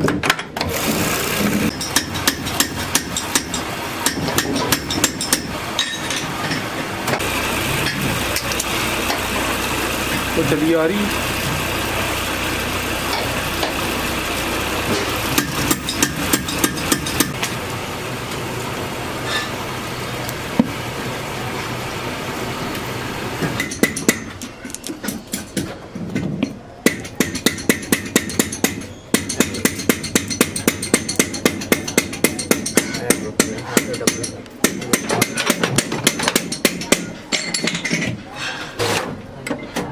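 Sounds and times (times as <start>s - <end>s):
workshop machine noise: 0.0s - 39.9s
rapid hammering: 0.7s - 6.2s, 14.6s - 17.5s, 23.4s - 24.4s, 26.8s - 37.2s.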